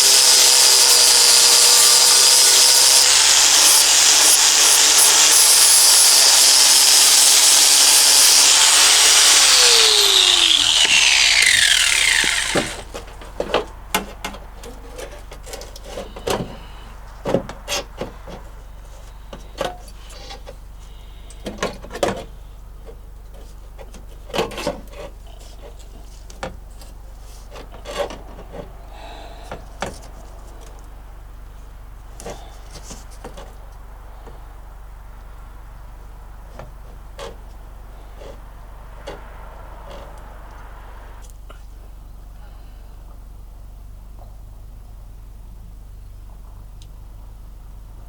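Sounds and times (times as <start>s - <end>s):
power grinder grinding metal: 0.0s - 13.0s.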